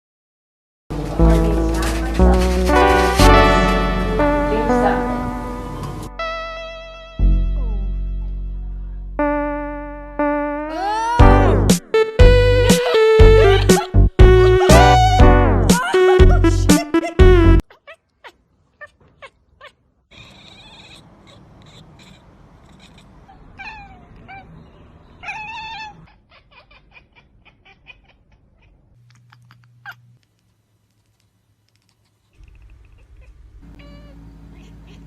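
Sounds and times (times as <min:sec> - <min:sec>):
loud music: 0:00.9 - 0:07.5, 0:08.6 - 0:17.6
cat meowing: 0:17.7 - 0:24.5, 0:25.2 - 0:28.8, 0:32.9 - 0:35.0.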